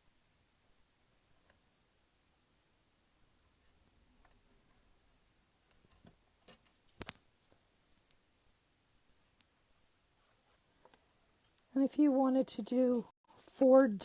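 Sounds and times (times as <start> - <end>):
clicks and taps of paper crafting: 5.7 - 7.2
paper handling: 12.9 - 14.0.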